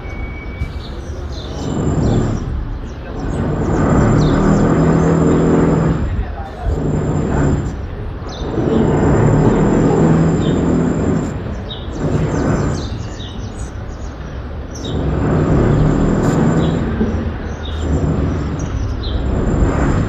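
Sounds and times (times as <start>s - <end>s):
bird chirps: 0.0s - 5.5s, 7.7s - 19.4s
construction machinery rumble: 0.0s - 20.0s.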